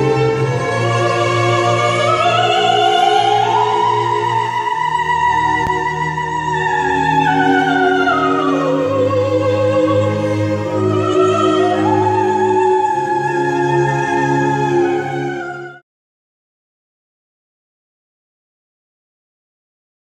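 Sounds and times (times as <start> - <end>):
orchestral accompaniment with strings: 0.0 - 15.8
soprano singing operatically: 0.0 - 15.8.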